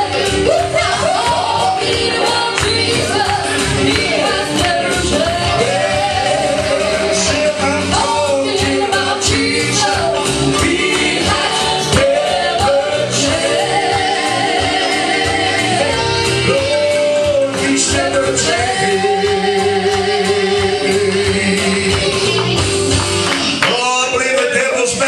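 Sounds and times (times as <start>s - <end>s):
gospel band playing: 0.0s - 25.0s.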